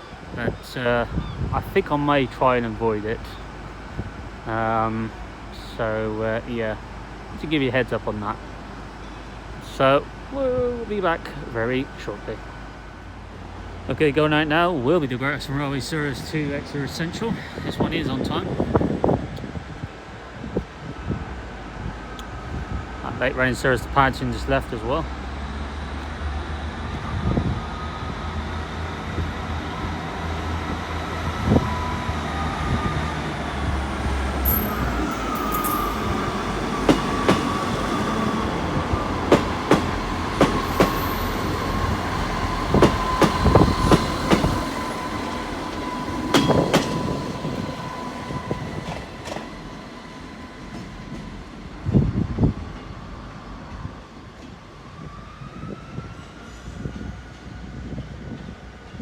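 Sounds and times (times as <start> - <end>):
train engine rumble: 0.0 - 59.0
train wheels clicking over rail joints: 34.0 - 47.9.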